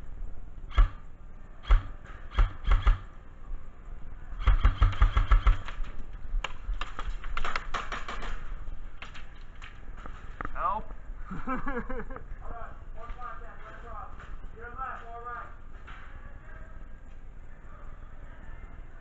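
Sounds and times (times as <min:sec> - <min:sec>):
airsoft rifle shots: 0:00.7 - 0:03.2, 0:04.4 - 0:06.0, 0:07.4 - 0:08.6.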